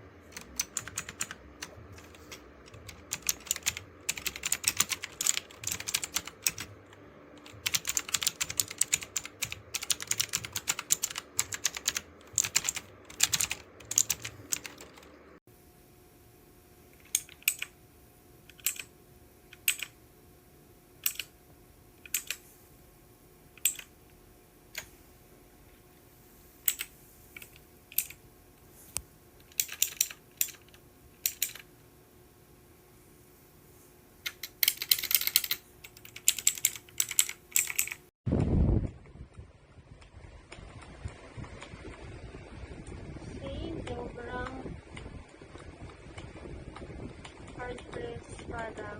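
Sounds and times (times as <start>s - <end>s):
clicky keyboard keys pressed: 0.3s - 15.1s, 17.0s - 17.7s, 18.5s - 18.9s, 19.5s - 20.0s, 21.0s - 21.3s, 22.0s - 22.4s, 23.6s - 23.9s, 29.4s - 31.6s, 34.2s - 38.0s.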